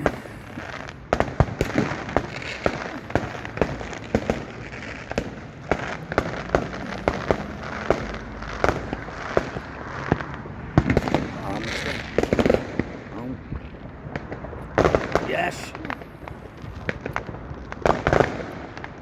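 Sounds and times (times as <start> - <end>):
continuous fireworks hiss: 0.0 - 19.0
fireworks bangs and pops: 0.0 - 19.0.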